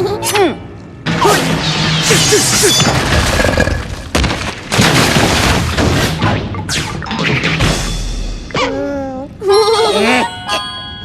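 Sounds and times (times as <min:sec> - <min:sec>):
cartoon crashes and hits: 0:01.1 - 0:08.4.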